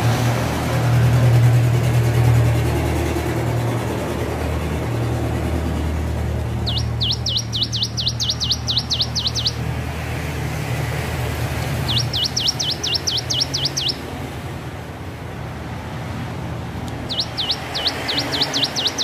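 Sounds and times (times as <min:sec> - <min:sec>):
prinia singing sharp repeated notes: 0:06.3 - 0:14.6, 0:16.8 - 0:19.0.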